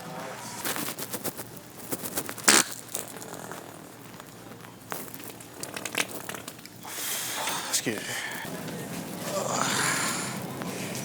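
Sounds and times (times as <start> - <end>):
wet fart noisemaker: 0.0 - 7.4
small clicks and rustles: 0.6 - 7.6.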